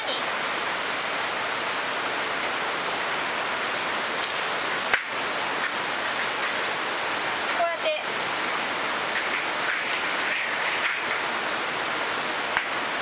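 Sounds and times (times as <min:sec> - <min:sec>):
running water rushing: 0:00.0 - 0:13.0.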